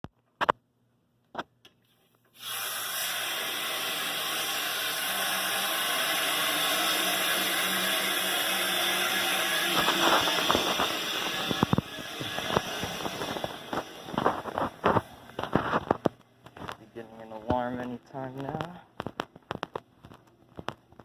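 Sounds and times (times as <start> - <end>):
water rushing from valve: 2.4 - 15.5.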